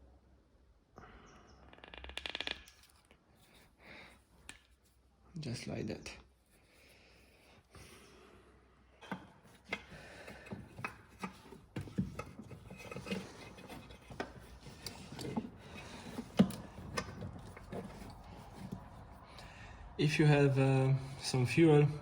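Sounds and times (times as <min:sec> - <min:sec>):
handling parts and tools: 0:09.0 - 0:19.5.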